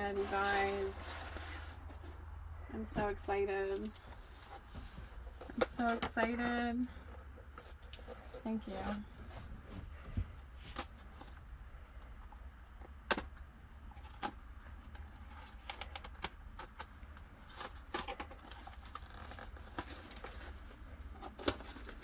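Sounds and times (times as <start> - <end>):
package being opened by hand: 13.0 - 22.0.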